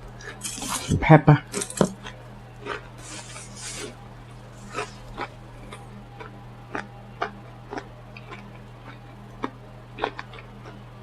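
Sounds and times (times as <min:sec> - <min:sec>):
steady low hum: 0:00.0 - 0:11.0
mouth chewing sounds: 0:02.0 - 0:03.9, 0:04.6 - 0:10.9.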